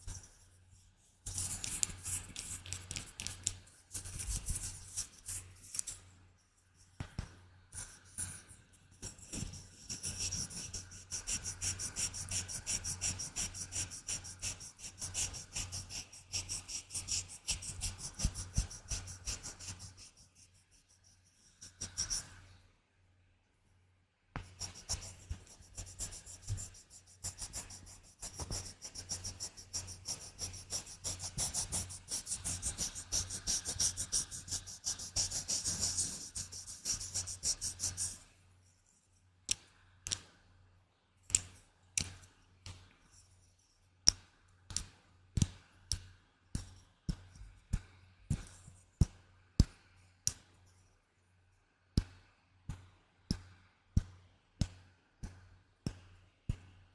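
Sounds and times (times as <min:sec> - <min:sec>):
crisp scratching strokes: 0:24.4 - 0:38.2.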